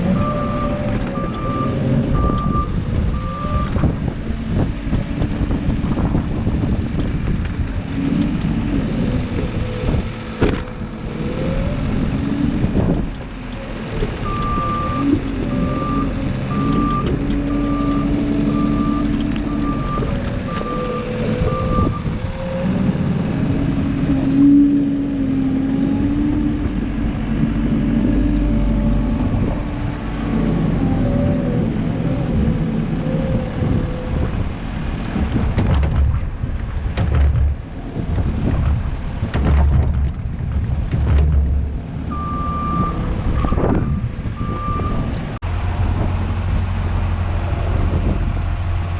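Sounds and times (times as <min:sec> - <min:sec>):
heavy vehicle engine running: 0:00.0 - 0:48.9.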